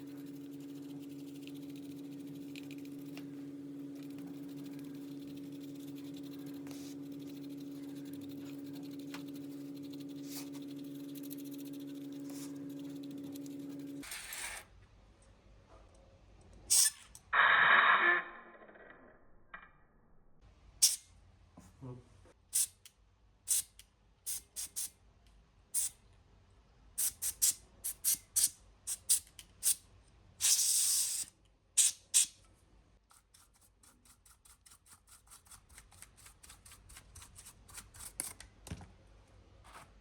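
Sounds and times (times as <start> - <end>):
tools clicking and tapping on laptop: 0.1 - 14.0.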